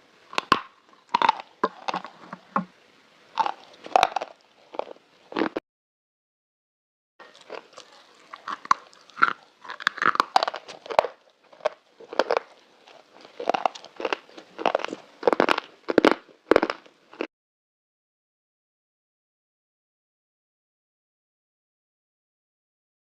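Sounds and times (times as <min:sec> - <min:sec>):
slate being crunched and chewed: 0:00.3 - 0:02.7, 0:03.4 - 0:05.6, 0:07.2 - 0:17.3.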